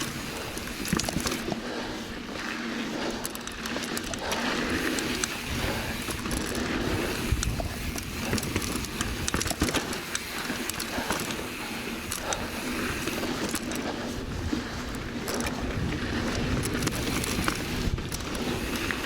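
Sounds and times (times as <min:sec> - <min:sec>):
bike clicks and rattles: 0:00.0 - 0:19.0
bike tyres on dirt: 0:00.0 - 0:19.0
wind rumble on microphone: 0:04.7 - 0:10.0, 0:10.9 - 0:19.0.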